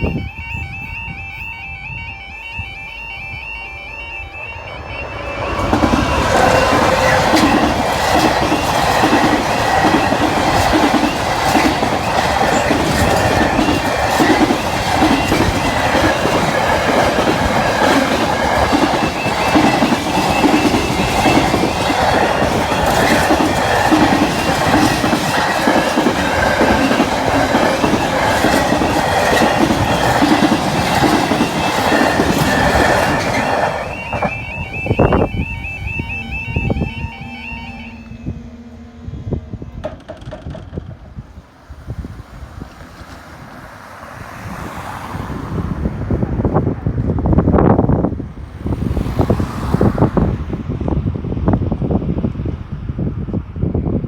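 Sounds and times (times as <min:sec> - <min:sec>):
freight train rolling past: 0:00.0 - 0:54.0
wagon wheels clattering over rail joints: 0:05.2 - 0:34.5, 0:39.8 - 0:41.0.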